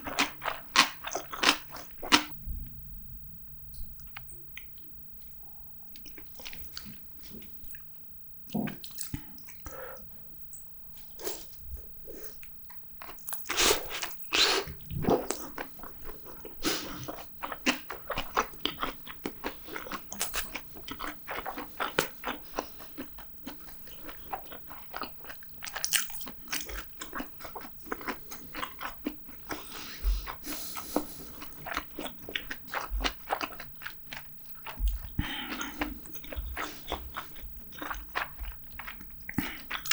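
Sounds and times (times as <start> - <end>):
person biting and chewing: 0.0 - 2.4, 13.0 - 39.9.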